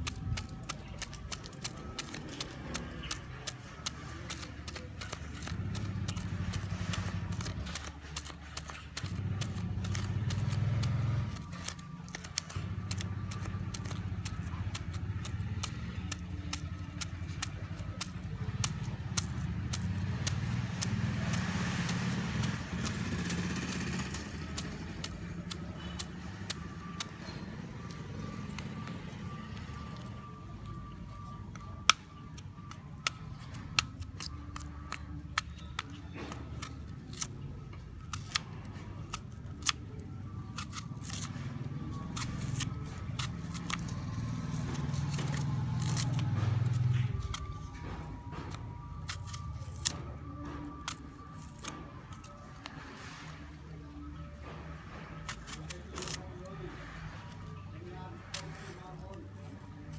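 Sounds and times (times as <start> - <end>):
fingernails tapping on apple: 0.0 - 30.1.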